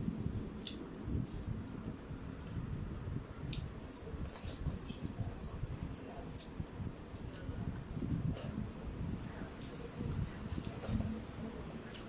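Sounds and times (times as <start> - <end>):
chewing and mouth noises: 0.2 - 6.7.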